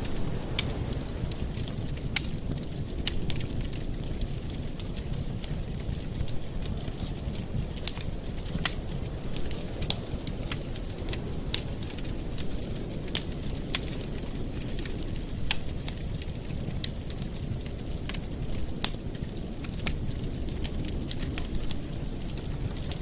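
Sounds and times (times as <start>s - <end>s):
low rumble of flames: 0.0s - 23.0s
wood crackling and popping: 0.0s - 23.0s.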